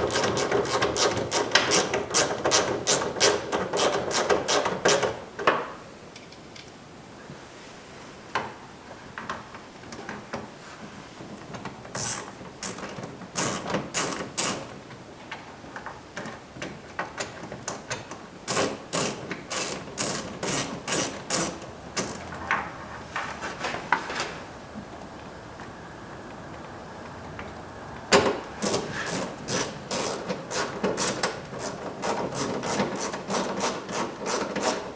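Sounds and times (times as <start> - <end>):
hand ratchet clicking: 17.9 - 22.2, 28.6 - 34.9.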